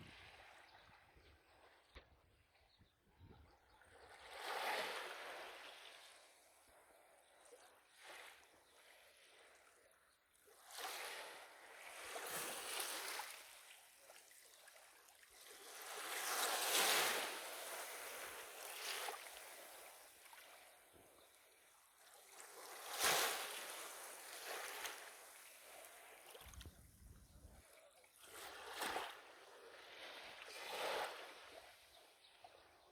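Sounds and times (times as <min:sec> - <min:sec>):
waves breaking on shore: 0:22.4 - 0:26.7.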